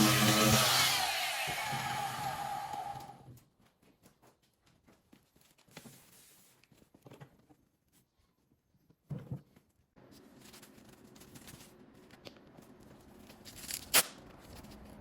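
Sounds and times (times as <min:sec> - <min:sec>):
power tool spinning down: 0:00.0 - 0:03.2.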